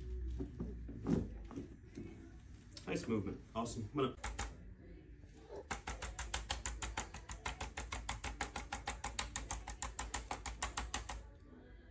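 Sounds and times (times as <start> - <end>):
rapid sharp clicks of instrument: 4.2 - 4.6, 5.6 - 11.2.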